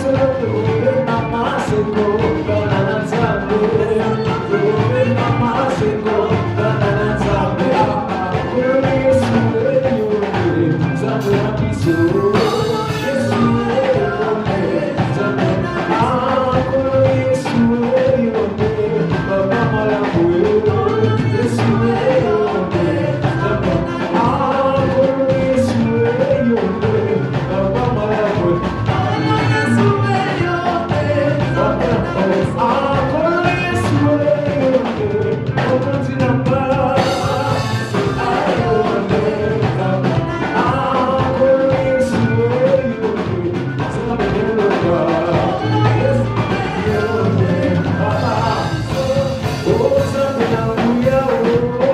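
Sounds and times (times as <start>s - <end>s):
church band playing worship music: 0.0s - 51.9s
drum kit beat: 0.0s - 51.9s
people singing: 0.0s - 51.9s.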